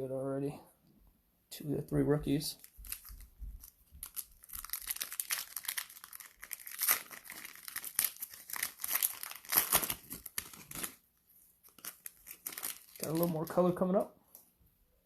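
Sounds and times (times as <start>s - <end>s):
cellophane wrapper crinkling and tearing: 2.6s - 13.8s.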